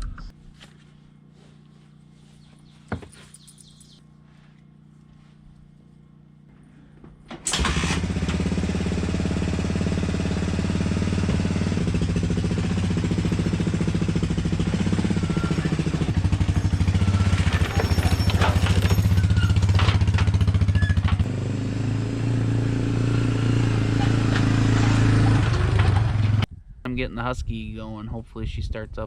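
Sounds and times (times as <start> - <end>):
engine starting and idling: 7.3 - 21.4.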